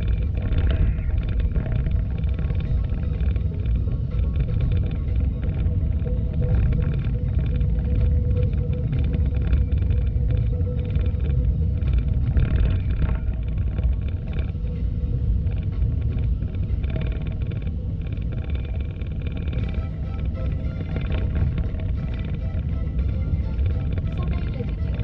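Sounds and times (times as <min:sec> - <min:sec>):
faint steady hum: 0:00.0 - 0:25.0
vehicle rumbling in motion: 0:00.0 - 0:25.0.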